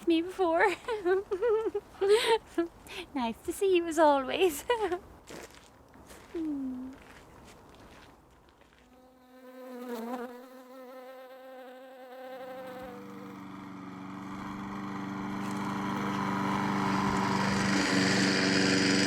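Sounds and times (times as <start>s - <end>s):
insect-like buzz: 8.8s - 14.6s.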